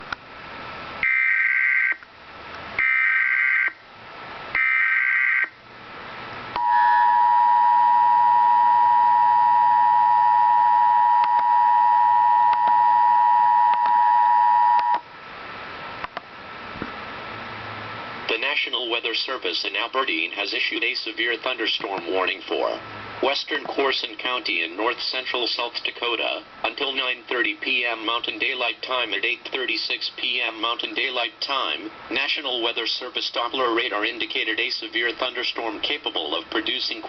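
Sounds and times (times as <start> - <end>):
two-tone attention signal: 6.6 - 15.0.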